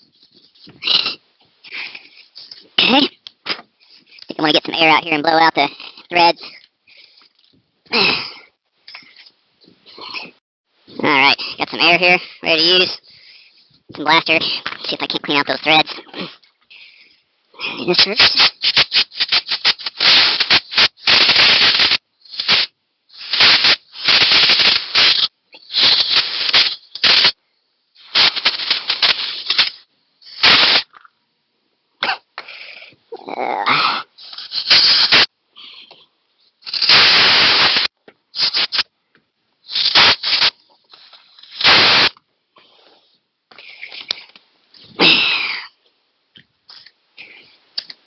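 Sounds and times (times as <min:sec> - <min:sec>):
hissing air spray blasts: 0:18.1 - 0:27.4, 0:28.0 - 0:30.9, 0:34.2 - 0:35.3, 0:36.6 - 0:38.8, 0:39.7 - 0:40.5, 0:41.4 - 0:42.2.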